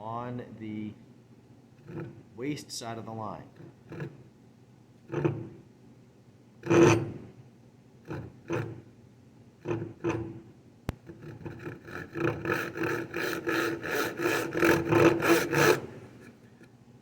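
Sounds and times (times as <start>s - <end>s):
back saw cutting wood: 1.8s - 2.2s, 3.5s - 4.3s, 5.1s - 5.6s, 6.6s - 7.2s, 8.1s - 8.8s, 9.6s - 10.4s, 11.0s - 16.3s.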